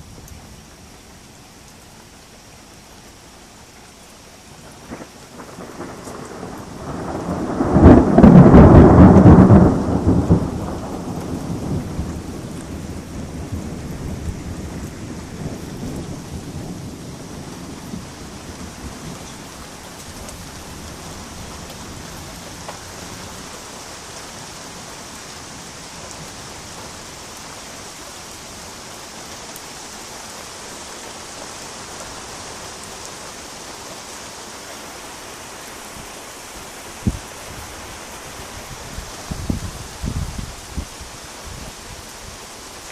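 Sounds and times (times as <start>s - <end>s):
steady rain falling: 0.0s - 42.9s
thunder rumbling: 4.6s - 27.2s.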